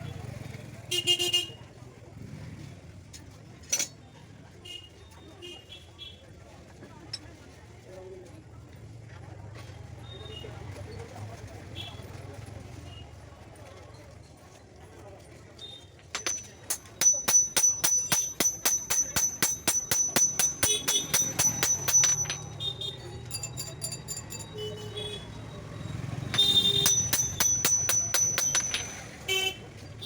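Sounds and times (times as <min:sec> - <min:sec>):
hammer ringing on steel anvil: 0:16.2 - 0:24.7, 0:26.3 - 0:29.2.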